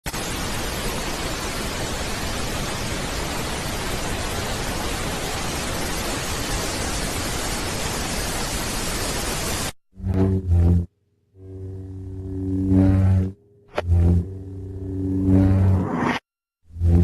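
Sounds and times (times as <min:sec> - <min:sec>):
loud static hiss: 0:00.1 - 0:09.8
loud low-pitched sound: 0:10.0 - 0:17.0.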